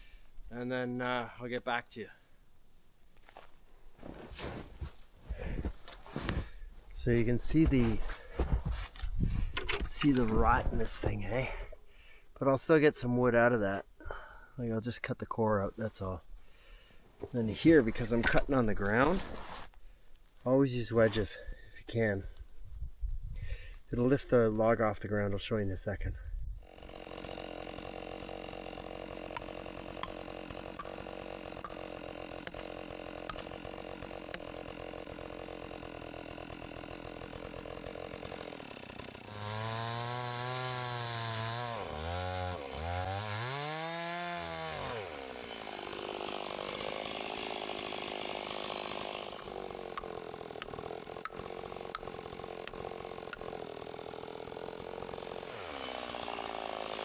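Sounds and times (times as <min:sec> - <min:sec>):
chainsaw cutting a log: 0:26.6 - 0:57.0.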